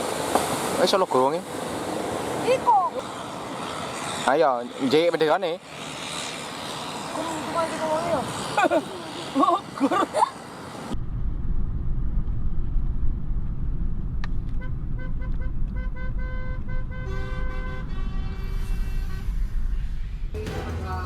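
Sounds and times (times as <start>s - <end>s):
heavy low rumble: 11.0s - 16.7s
horn toots and blasts: 14.5s - 21.0s.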